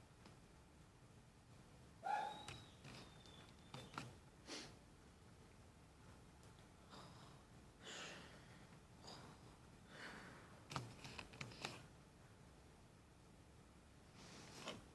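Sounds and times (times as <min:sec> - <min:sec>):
sleeping person breathing: 0:06.8 - 0:10.6.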